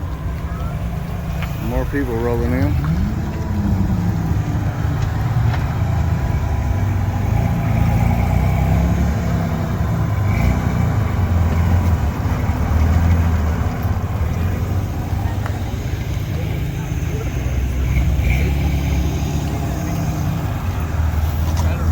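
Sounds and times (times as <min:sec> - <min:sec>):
car engines rumbling: 0:00.0 - 0:21.9.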